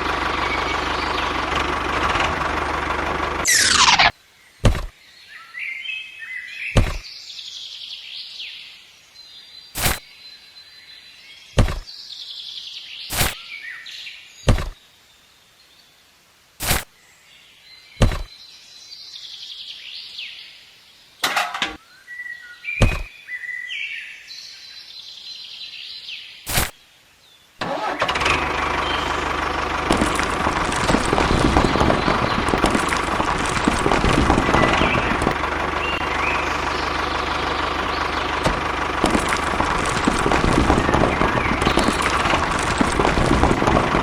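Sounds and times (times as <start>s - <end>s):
birds chirping: 0.0s - 15.9s, 17.0s - 44.0s
sharp knocks: 4.6s - 4.9s, 6.8s - 7.0s, 11.6s - 11.8s, 14.5s - 14.8s, 18.0s - 18.3s, 22.8s - 23.1s.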